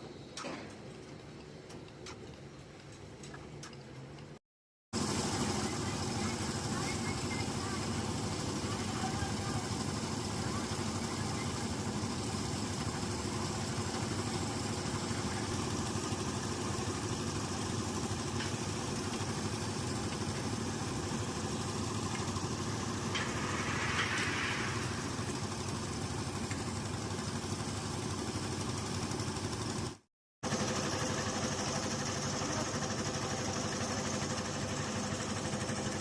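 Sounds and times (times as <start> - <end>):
concrete mixer engine running: 5.0 - 36.0
short rush of noise: 22.7 - 26.4.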